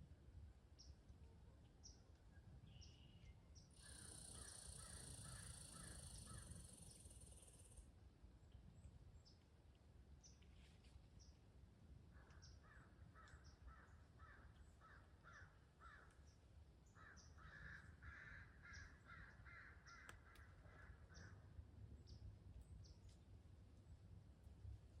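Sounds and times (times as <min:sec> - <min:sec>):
small birds chirping: 0:02.7 - 0:07.8
crow cawing: 0:04.4 - 0:06.5, 0:12.6 - 0:16.2, 0:17.0 - 0:21.4.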